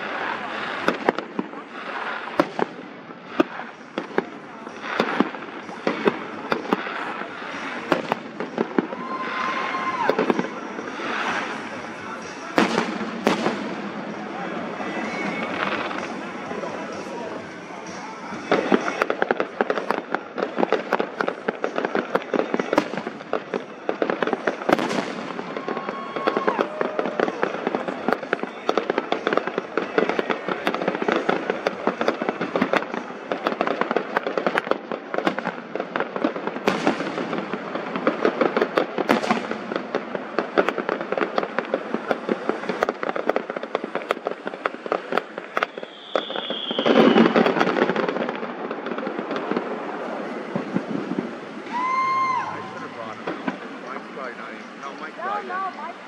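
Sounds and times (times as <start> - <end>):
fireworks crackling pops: 0.0 - 56.0
heavy fireworks bangs: 0.0 - 56.0
firework whistle: 5.0 - 19.3, 24.2 - 32.9, 45.2 - 48.4, 51.2 - 53.6.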